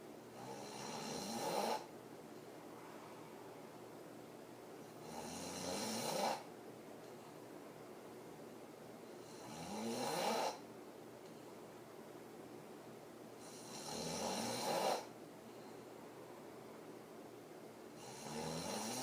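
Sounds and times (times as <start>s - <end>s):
woman snoring: 0.4s - 1.9s, 5.0s - 6.4s, 9.3s - 10.6s, 13.4s - 15.1s, 18.0s - 19.0s.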